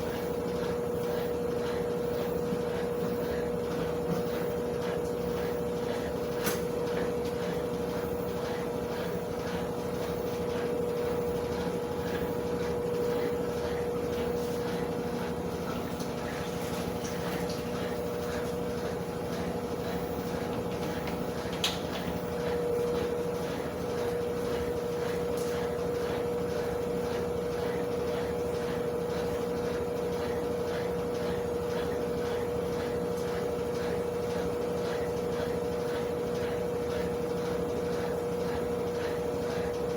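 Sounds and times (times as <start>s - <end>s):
washing machine humming: 0.0s - 39.9s.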